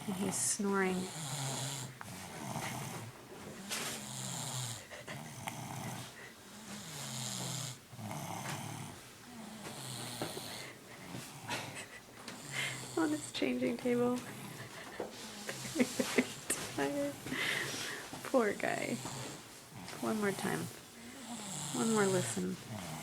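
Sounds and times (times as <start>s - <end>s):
baby snoring: 0.0s - 11.8s, 12.4s - 13.4s, 18.8s - 23.0s
hissing breath: 17.3s - 18.2s.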